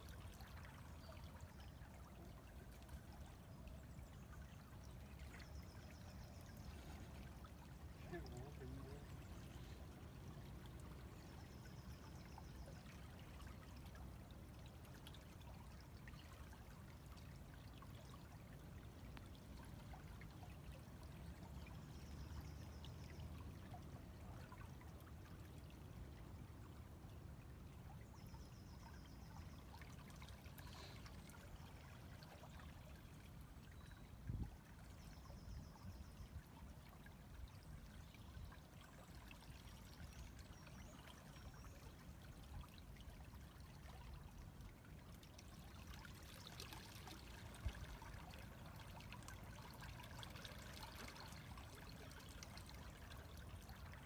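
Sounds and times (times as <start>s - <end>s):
river water running: 0.0s - 54.0s.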